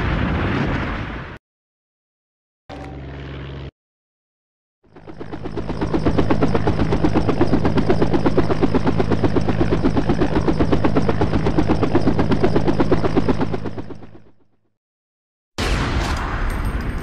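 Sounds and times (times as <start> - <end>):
engine hum: 2.7 - 3.7
helicopter rotor beating: 2.7 - 3.7, 4.8 - 14.7.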